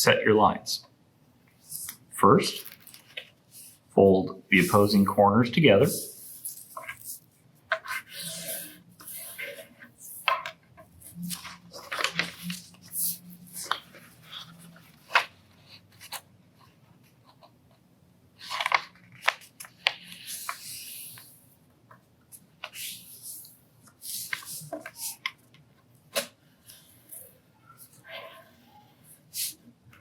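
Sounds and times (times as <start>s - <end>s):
paper rustling and crackling: 6.2s - 16.2s, 18.4s - 21.3s
paper sliding scrapes: 7.8s - 10.3s, 11.0s - 15.2s, 19.8s - 21.4s, 22.6s - 25.2s.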